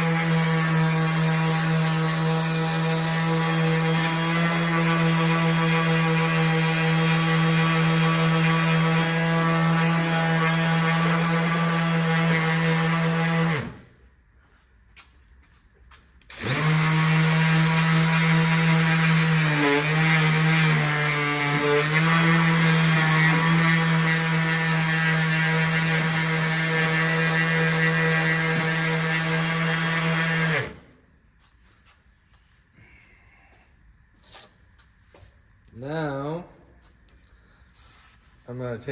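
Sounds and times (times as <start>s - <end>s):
electric power tool humming: 0.0s - 14.0s, 16.3s - 31.0s.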